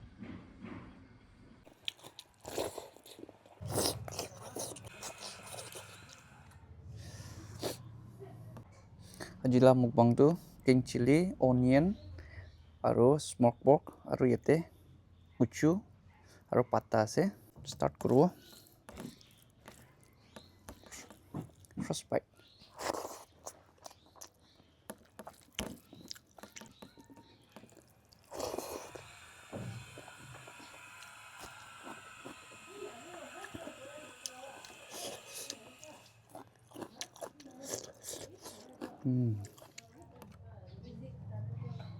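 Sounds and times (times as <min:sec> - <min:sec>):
biting and crunching food: 0:01.7 - 0:06.6, 0:17.7 - 0:22.0, 0:22.6 - 0:40.4
chewing: 0:01.7 - 0:07.9, 0:18.0 - 0:22.0, 0:22.6 - 0:40.4.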